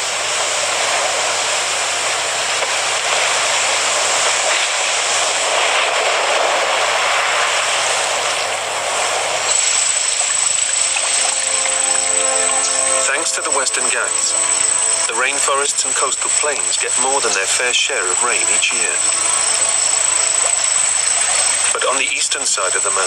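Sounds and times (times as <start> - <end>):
thin high steady tone: 9.5 - 23.0.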